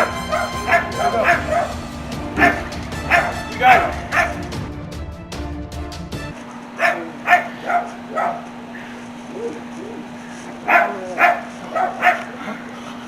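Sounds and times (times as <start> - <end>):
dog barking: 0.0 - 1.8, 2.4 - 4.4, 6.8 - 8.5, 10.6 - 12.6.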